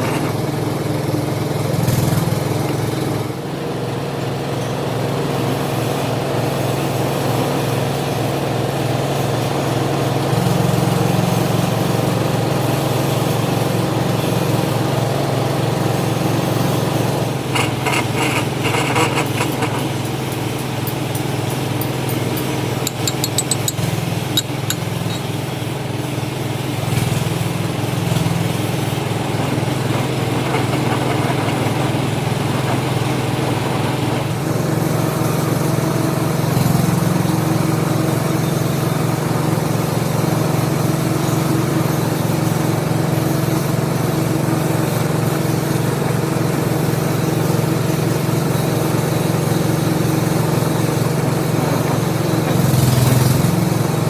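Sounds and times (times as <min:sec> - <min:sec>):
lathe motor running: 0:15.0 - 0:36.1, 0:48.4 - 0:54.0.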